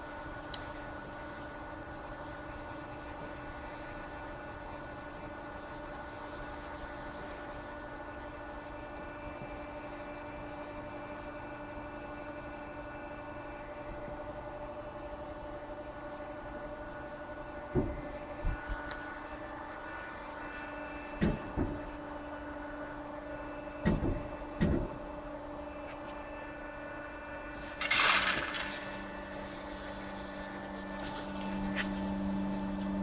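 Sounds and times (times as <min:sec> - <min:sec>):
band saw humming: 0:17.6 - 0:33.0
dull thumps: 0:17.7 - 0:18.1, 0:23.8 - 0:25.0.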